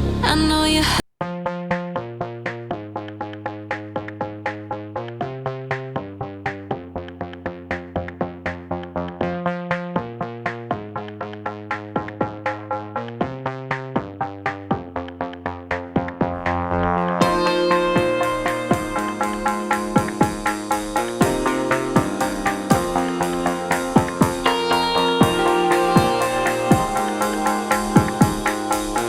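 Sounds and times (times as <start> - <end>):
electronic synth music with drum beat: 1.3 - 29.0.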